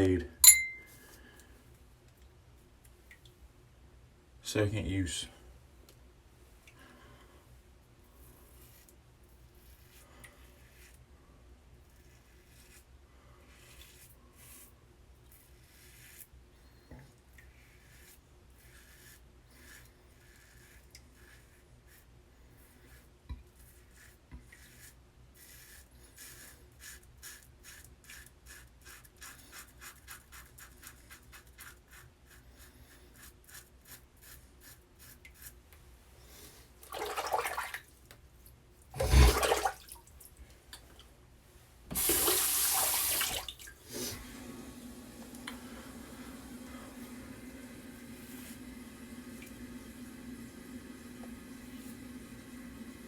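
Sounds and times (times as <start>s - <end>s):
shaving brush lathering strokes: 8.0s - 11.1s, 11.7s - 35.6s, 39.0s - 39.7s, 41.9s - 53.0s
water splashing: 36.9s - 37.8s, 39.0s - 40.1s, 41.9s - 43.8s
running tap water: 39.0s - 39.9s, 41.9s - 53.0s.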